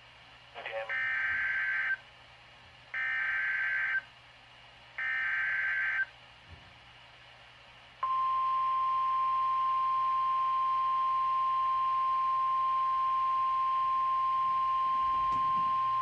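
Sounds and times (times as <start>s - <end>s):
high steady alarm tone: 0.9s - 2.0s, 3.0s - 4.0s, 5.0s - 6.1s, 8.0s - 16.0s.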